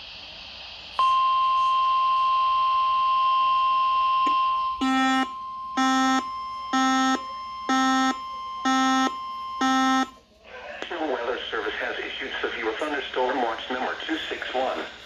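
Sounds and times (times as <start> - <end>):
steady single-pitch alert tone: 1.0 - 10.2
buzzy electronic alert beep: 4.4 - 10.1.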